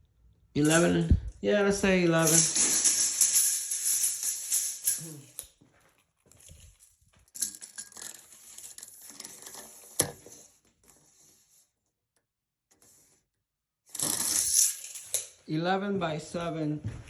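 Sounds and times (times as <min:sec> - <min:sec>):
tape measure rustling and scraping: 0:00.6 - 0:11.6, 0:13.9 - 0:15.5.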